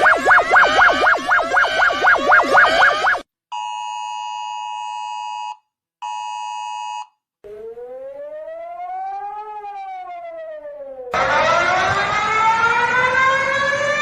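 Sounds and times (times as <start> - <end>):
siren rising and falling: 0.0 - 3.2, 7.4 - 14.0
electronic alarm tone: 0.0 - 3.9.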